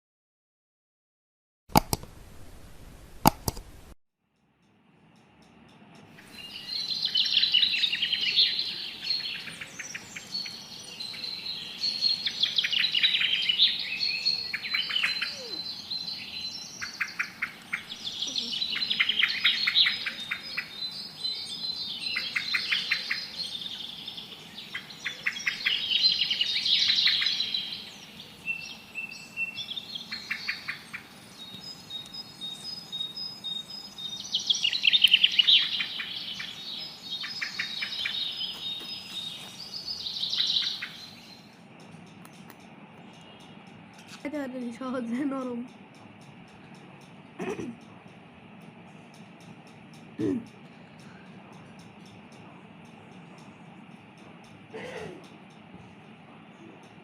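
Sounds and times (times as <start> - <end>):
pet birds chirping: 6.2 - 46.0.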